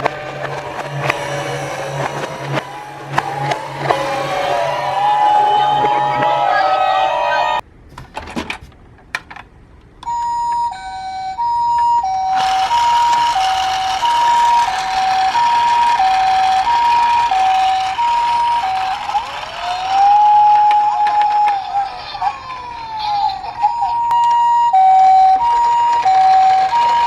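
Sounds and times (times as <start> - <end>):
ambulance two-tone siren: 0.0 - 7.6, 10.0 - 27.0
rising siren wail: 0.0 - 7.6, 10.7 - 27.0
steady rushing noise: 0.0 - 7.6
clicks: 0.0 - 10.8, 11.7 - 27.0.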